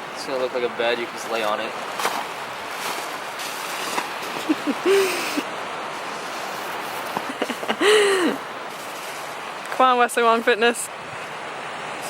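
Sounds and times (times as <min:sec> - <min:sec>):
rush of air and fabric: 0:01.9 - 0:09.6.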